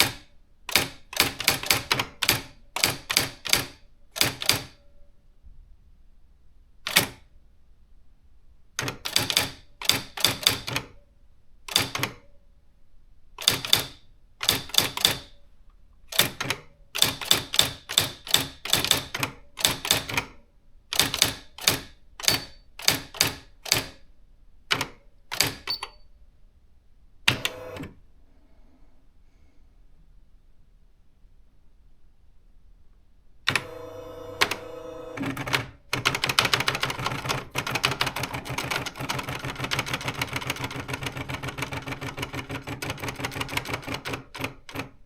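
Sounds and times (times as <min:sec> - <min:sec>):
electronic typewriter typing: 0:00.0 - 0:04.8, 0:06.9 - 0:07.2, 0:08.8 - 0:10.9, 0:11.7 - 0:12.2, 0:13.4 - 0:15.3, 0:16.1 - 0:20.3, 0:20.9 - 0:24.0, 0:24.7 - 0:26.0, 0:33.5 - 0:45.0.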